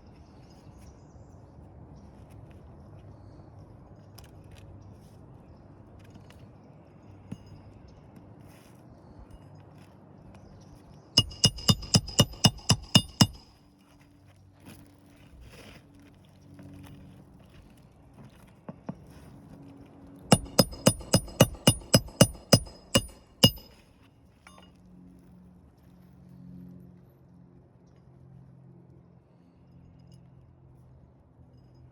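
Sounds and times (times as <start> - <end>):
hammer driving nails into shingles: 11.2 - 13.5, 20.3 - 23.8.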